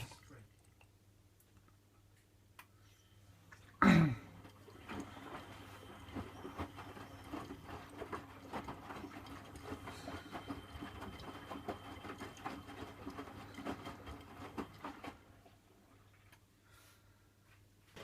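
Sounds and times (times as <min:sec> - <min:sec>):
motor hum: 0:04.2 - 0:15.4
washing machine drum knocking: 0:04.3 - 0:15.2.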